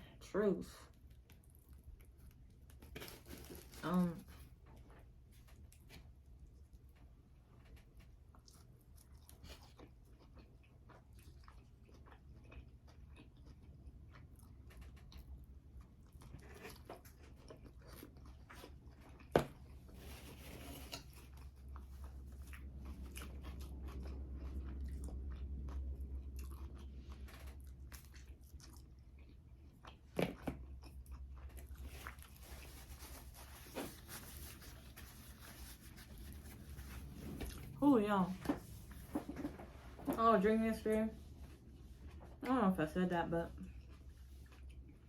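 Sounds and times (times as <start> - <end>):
person chewing food: 4.4 - 37.8, 43.6 - 45.0.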